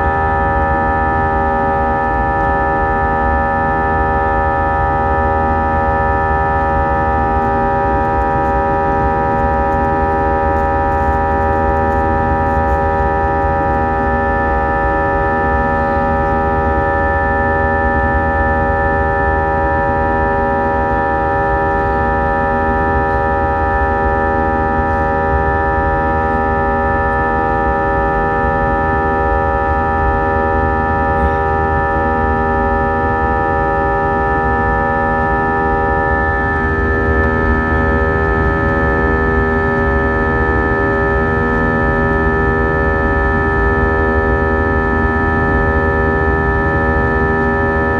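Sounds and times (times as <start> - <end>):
jet engines whining in cabin: 0.0 - 47.9.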